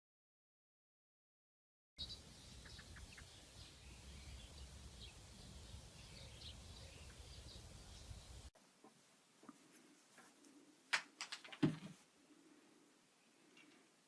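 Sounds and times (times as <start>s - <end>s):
faint high chirps: 2.0s - 8.5s.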